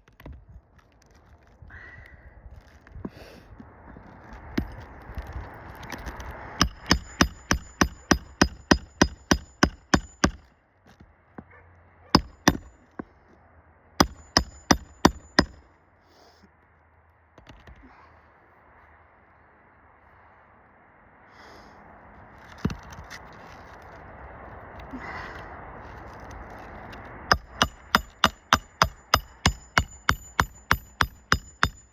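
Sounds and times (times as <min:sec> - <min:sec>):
hammer striking nails: 0:06.6 - 0:10.4, 0:12.2 - 0:12.7, 0:14.0 - 0:15.6, 0:27.3 - 0:31.9
scraping and handling: 0:22.3 - 0:27.3.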